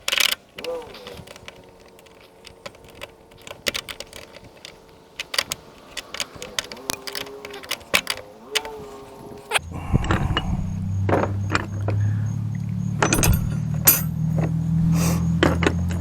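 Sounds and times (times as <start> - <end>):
metallic clicks of hand tools: 0.0 - 9.0, 13.0 - 14.2.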